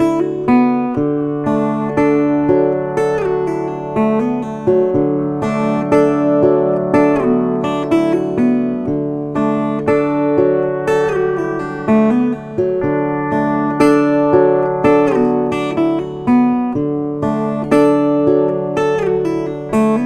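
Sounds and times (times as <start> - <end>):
acoustic guitar strumming: 0.0 - 20.0.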